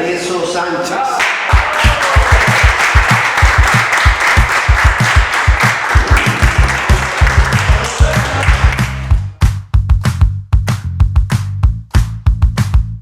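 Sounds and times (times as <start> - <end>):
applause: 1.2 - 9.3
music with thumping beat: 1.6 - 13.0.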